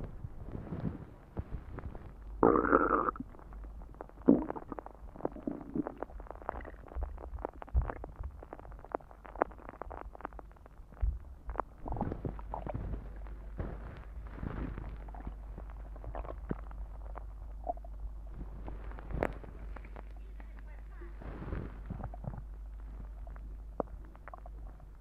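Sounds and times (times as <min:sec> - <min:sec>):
stomach growling and gurgling: 0:00.0 - 0:25.0
small bubbling pops and clicks: 0:02.4 - 0:13.3.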